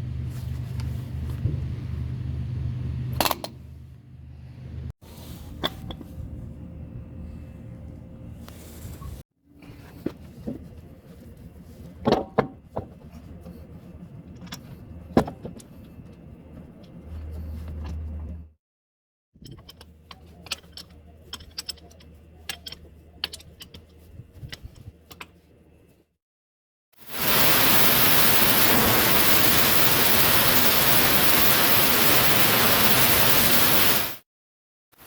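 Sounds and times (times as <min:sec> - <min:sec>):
low hum: 0:03.8 - 0:09.2, 0:27.1 - 0:34.2.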